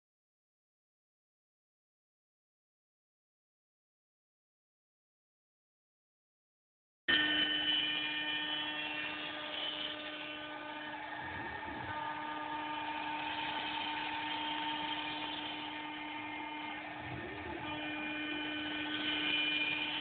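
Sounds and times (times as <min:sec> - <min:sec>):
machining noise: 0:07.1 - 0:20.0
router spindle whine: 0:07.1 - 0:20.0.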